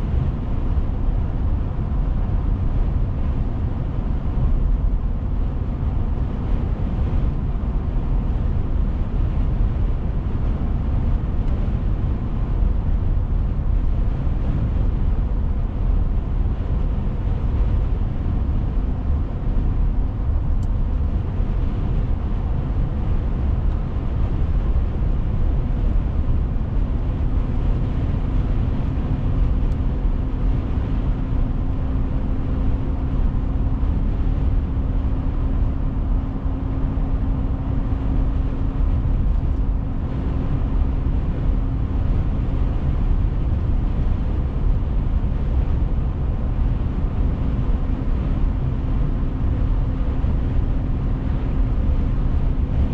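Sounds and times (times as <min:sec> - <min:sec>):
car cabin road noise: 0:00.0 - 0:52.9.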